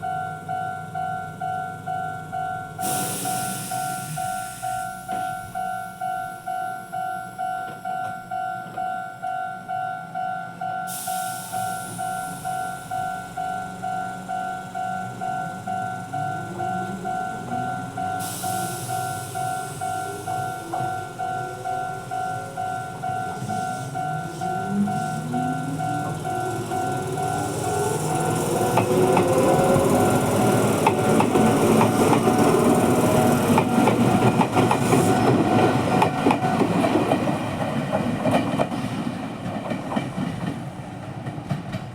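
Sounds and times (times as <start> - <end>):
level crossing warning bell: 0.0 - 36.6
hiss: 2.8 - 5.3, 10.9 - 13.2, 18.1 - 33.8
train motor whine: 10.9 - 37.3.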